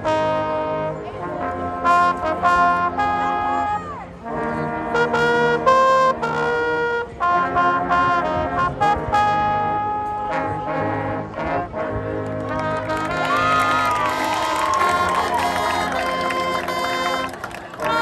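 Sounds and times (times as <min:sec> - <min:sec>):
marching band playing: 0:00.0 - 0:18.0
trombones and trumpets: 0:00.0 - 0:18.0.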